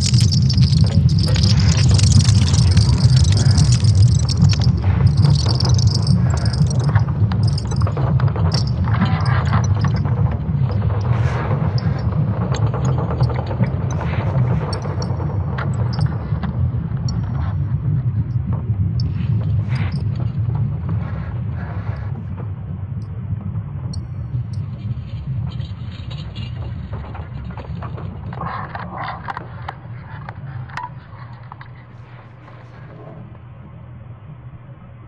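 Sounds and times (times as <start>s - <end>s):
low rumble: 0.0s - 21.6s.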